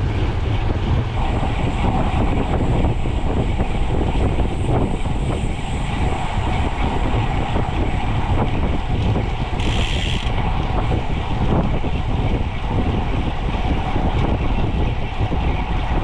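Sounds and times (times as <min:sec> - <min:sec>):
road noise: 0:00.0 - 0:16.0
wind rumble on microphone: 0:00.0 - 0:16.0.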